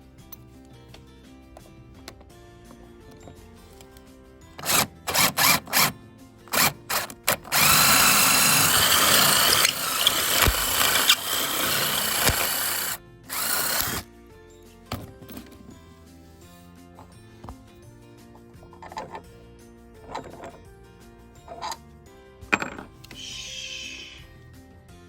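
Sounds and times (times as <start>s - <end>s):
oscillating multi-tool cutting wood: 4.6s - 5.9s, 6.5s - 14.0s.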